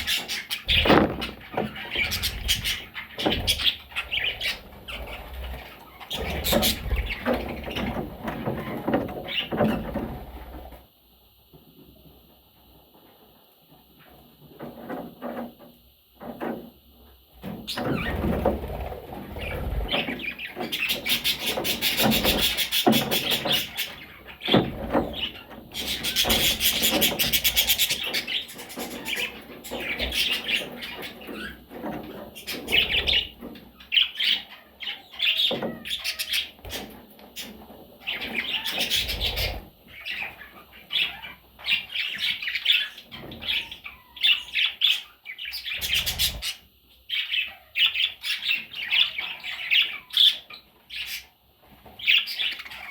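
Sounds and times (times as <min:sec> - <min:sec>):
baby budgies chirping: 0:00.0 - 0:10.6, 0:17.4 - 0:18.5, 0:19.3 - 0:52.9.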